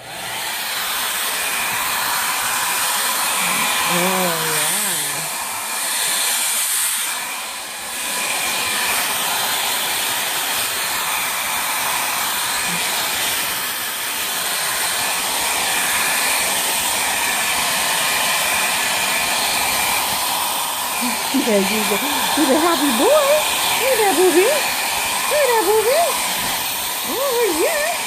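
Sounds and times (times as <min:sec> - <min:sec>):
hair dryer blowing: 0:00.0 - 0:28.0.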